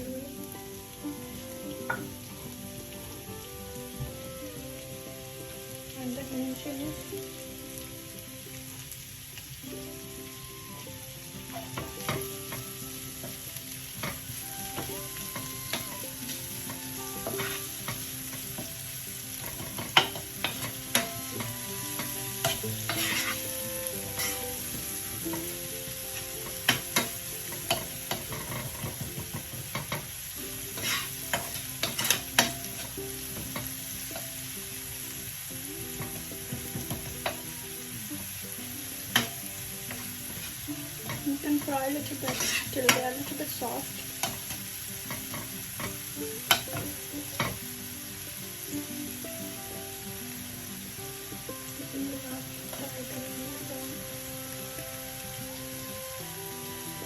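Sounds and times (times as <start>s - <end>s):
vegetables sizzling in hot oil: 0.0s - 57.0s
utensil scraping a pan: 17.2s - 17.8s, 19.4s - 24.6s, 30.7s - 32.9s, 39.2s - 43.3s.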